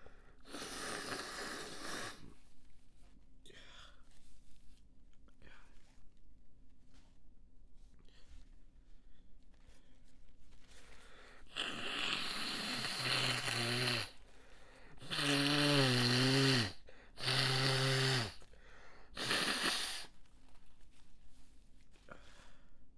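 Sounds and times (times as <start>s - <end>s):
person blowing congested nose: 0.0s - 2.4s, 10.8s - 20.2s.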